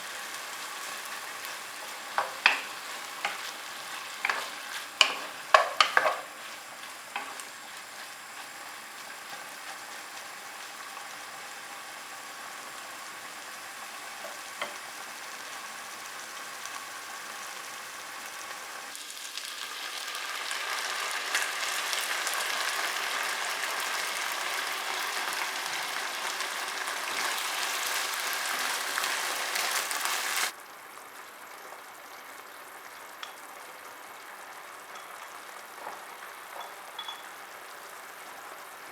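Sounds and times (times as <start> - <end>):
food sizzling in a frying pan: 0.0 - 38.9
utensil clinks: 36.6 - 37.3.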